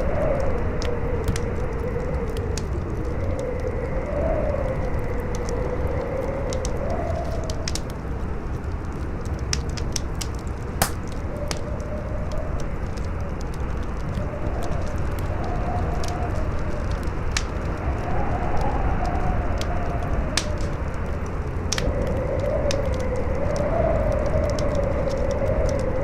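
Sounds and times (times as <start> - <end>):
wood fire crackling: 0.0 - 26.0
wind howling: 10.5 - 26.0.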